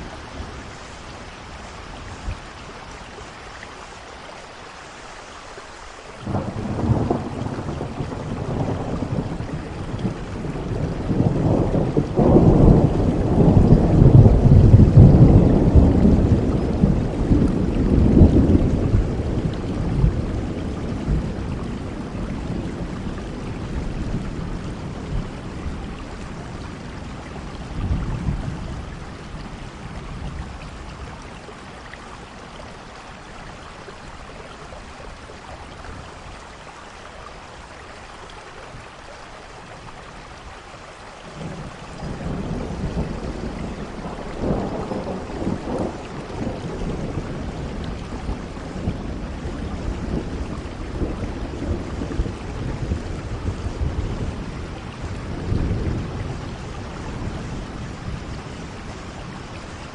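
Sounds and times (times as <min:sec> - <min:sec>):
steady rain: 0:00.0 - 0:59.9
rolling thunder: 0:06.2 - 0:31.4, 0:41.3 - 0:59.9.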